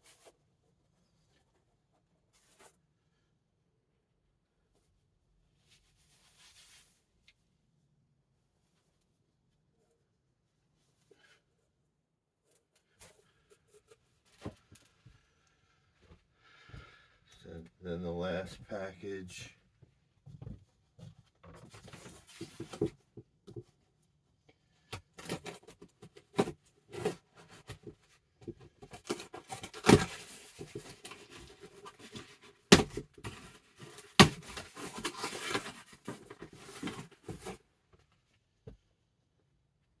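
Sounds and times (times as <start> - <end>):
packaging rustling and tearing: 28.9 - 37.6.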